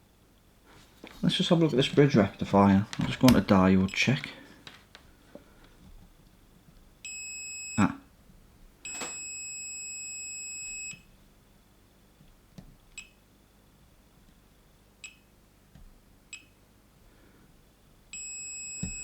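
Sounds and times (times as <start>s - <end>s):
high-pitched multimeter beep: 18.2s - 19.0s.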